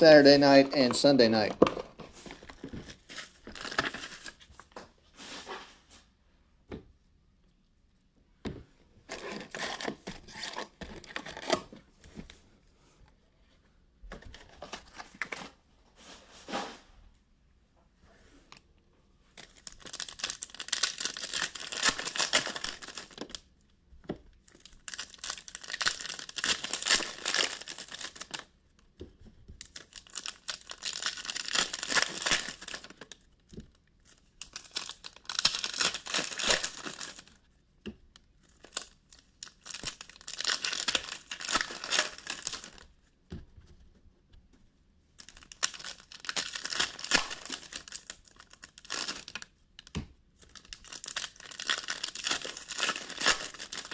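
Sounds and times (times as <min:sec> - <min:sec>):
card pack wrappers tearing and crinkling: 0:02.2 - 0:04.5, 0:09.1 - 0:11.6, 0:19.4 - 0:23.5, 0:24.5 - 0:28.5, 0:29.6 - 0:33.3, 0:34.4 - 0:37.4, 0:38.5 - 0:42.8, 0:45.2 - 0:53.9.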